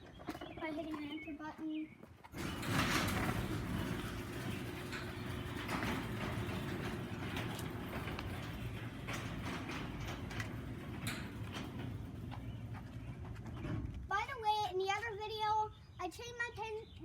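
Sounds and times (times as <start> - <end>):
clicks and rattles: 2.2 - 14.1
garage door opener motor hum: 2.3 - 14.1.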